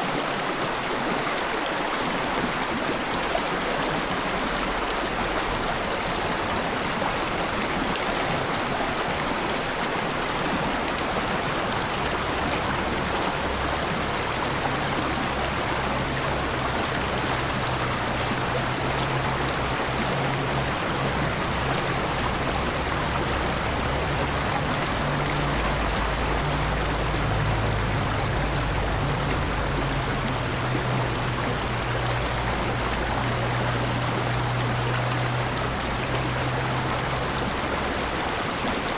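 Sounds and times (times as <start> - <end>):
stream rushing: 0.0 - 38.9.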